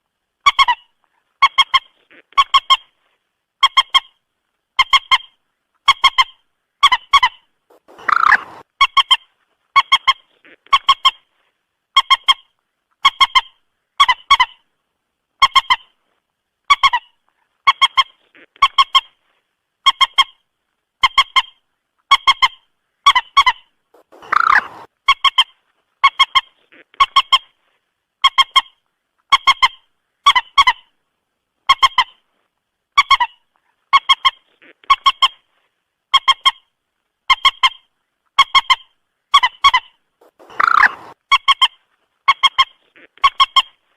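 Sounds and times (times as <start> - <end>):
moorhen honking calls: 7.2 - 8.6, 24.0 - 24.9, 39.7 - 41.2
moorhen harsh long call: 7.7 - 8.6, 24.0 - 24.9, 40.3 - 41.2.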